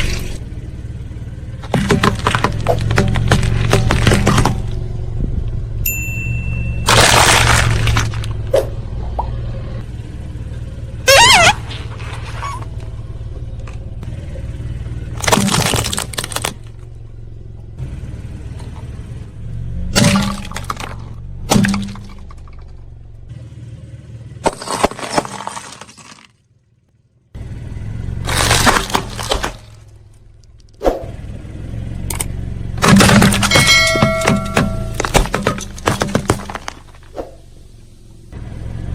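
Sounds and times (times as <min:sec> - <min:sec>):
tire crushing objects: 0:00.0 - 0:05.8, 0:06.6 - 0:23.4, 0:24.2 - 0:38.4
car engine running: 0:00.0 - 0:38.9
sharp crack: 0:06.9 - 0:09.2, 0:28.3 - 0:29.9
wavering squeal: 0:11.0 - 0:12.8.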